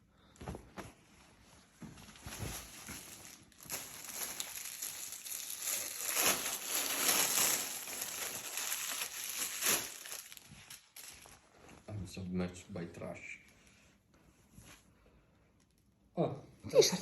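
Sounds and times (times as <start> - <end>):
packaging crinkling and rustling: 2.0 - 11.8.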